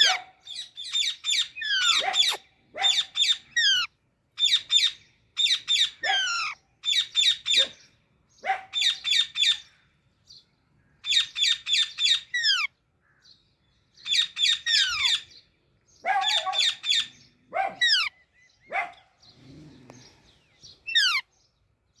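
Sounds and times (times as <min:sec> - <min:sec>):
parakeet chirping: 0:01.0 - 0:02.4, 0:03.2 - 0:07.1, 0:11.2 - 0:12.7, 0:17.8 - 0:18.1, 0:20.9 - 0:21.2.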